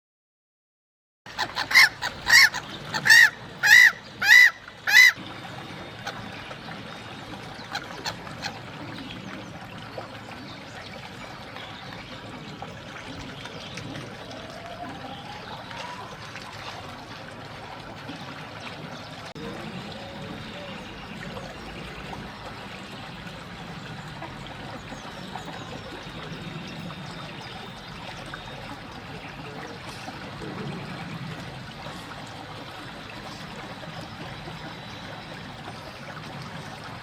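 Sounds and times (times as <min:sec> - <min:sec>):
gull calling: 0:01.3 - 0:05.2, 0:14.0 - 0:16.9
low background wash: 0:01.3 - 0:37.0.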